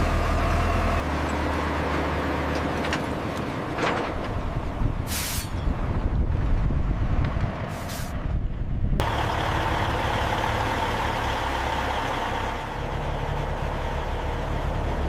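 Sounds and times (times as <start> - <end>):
heavy machinery engine rumbling: 0.0 - 15.0
short hiss: 5.1 - 5.6.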